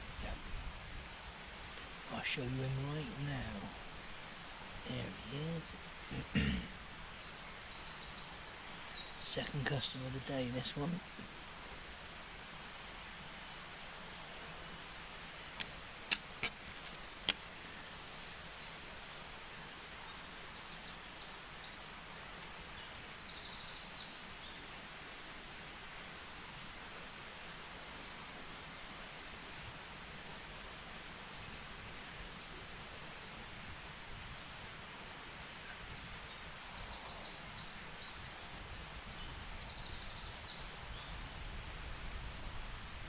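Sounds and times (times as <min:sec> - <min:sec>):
steady hiss: 0:00.0 - 0:43.0
songbirds chirping and trilling: 0:00.2 - 0:25.4, 0:34.0 - 0:43.0.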